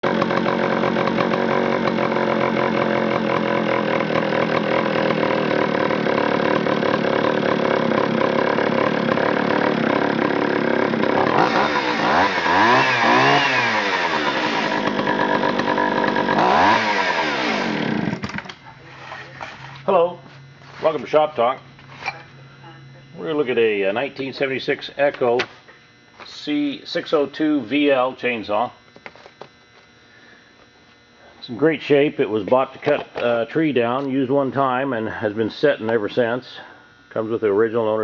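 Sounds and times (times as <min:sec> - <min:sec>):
chainsaw engine revving: 0:00.0 - 0:18.5.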